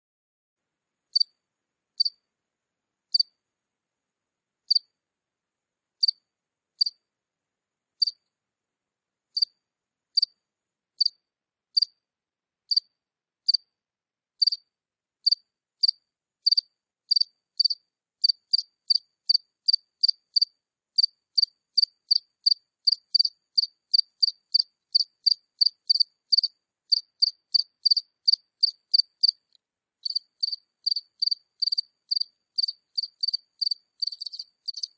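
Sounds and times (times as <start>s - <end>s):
cricket chirping: 1.1s - 1.4s, 2.0s - 2.3s, 3.1s - 3.4s, 4.7s - 4.9s, 6.0s - 6.2s, 6.8s - 7.0s, 8.0s - 8.2s, 9.4s - 9.6s, 10.2s - 10.4s, 11.0s - 11.2s, 11.8s - 12.0s, 12.7s - 12.9s, 13.5s - 13.7s, 14.4s - 14.6s, 15.2s - 34.9s.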